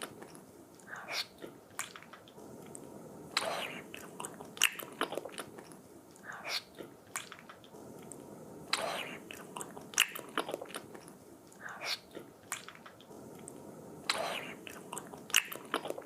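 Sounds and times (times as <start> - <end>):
chewing and biting: 3.4 - 5.7, 8.7 - 11.6, 14.1 - 16.0.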